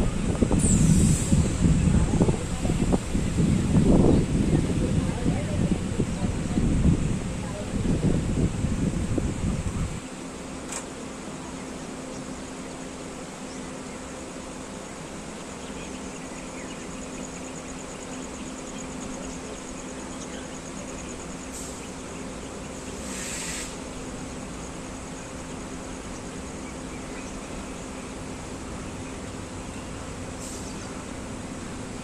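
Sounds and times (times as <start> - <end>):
insects chirping: 0.0 - 32.0
outdoor background hiss: 0.0 - 32.0
short hissing rush: 0.2 - 3.5, 21.4 - 22.1, 22.8 - 24.2, 30.3 - 31.1.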